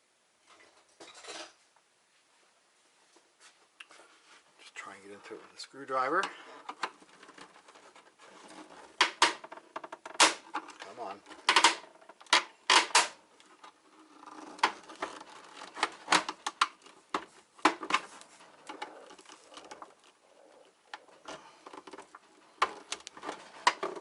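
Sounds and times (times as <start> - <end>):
plastic clips clicking: 9.0 - 13.8.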